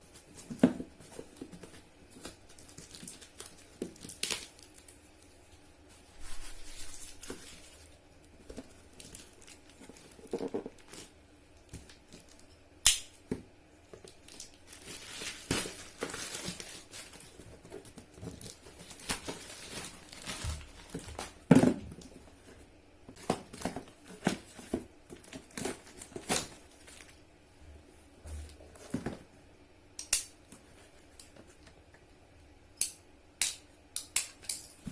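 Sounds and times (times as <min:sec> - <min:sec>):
packaging crinkling and tearing: 0:01.4 - 0:05.4, 0:06.4 - 0:12.4, 0:14.0 - 0:22.1, 0:23.2 - 0:27.2.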